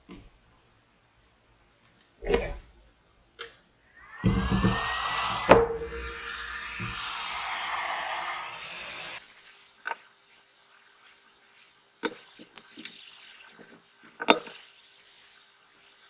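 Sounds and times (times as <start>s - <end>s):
steady hiss: 4.0s - 16.0s
tool scraping on glass: 9.2s - 16.0s.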